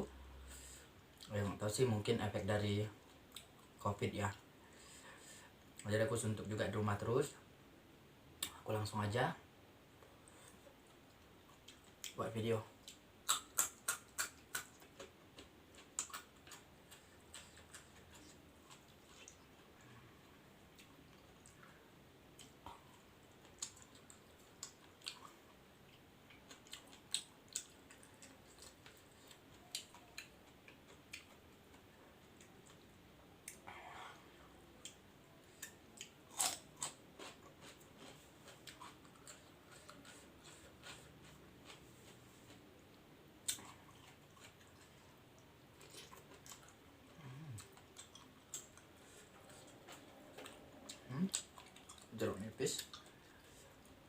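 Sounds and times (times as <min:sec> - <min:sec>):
chewing and biting crunches: 0:12.8 - 0:20.0, 0:35.6 - 0:42.6, 0:45.8 - 0:53.8
low vocal hum: 0:47.1 - 0:47.8.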